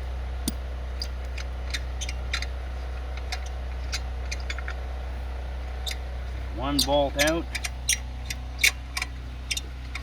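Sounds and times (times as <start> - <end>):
steady low hum: 0.0 - 10.0
ratchet clicking: 6.8 - 10.0.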